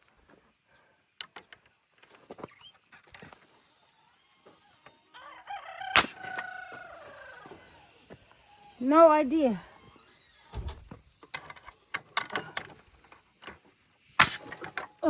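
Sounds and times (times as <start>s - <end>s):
rooster crowing: 5.1s - 7.6s.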